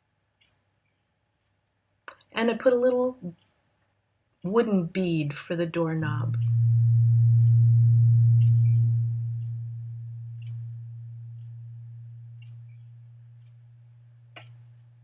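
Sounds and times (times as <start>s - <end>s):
steady low tone: 6.0s - 15.0s.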